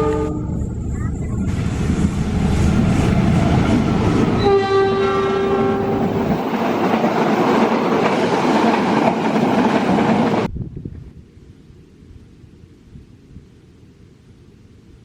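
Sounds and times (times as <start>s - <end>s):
shrill locomotive horn: 0.0s - 0.7s, 4.1s - 6.4s
train rail noise: 0.0s - 10.5s.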